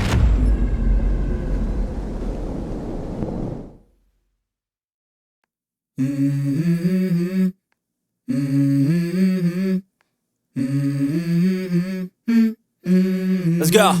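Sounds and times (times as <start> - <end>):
wordless vocal melody: 6.0 - 7.6, 8.3 - 9.9, 10.6 - 14.0.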